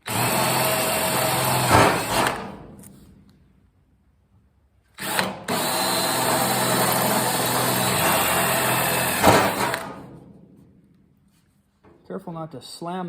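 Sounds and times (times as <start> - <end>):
power drill boring through metal: 0.0 - 2.6, 5.0 - 10.1.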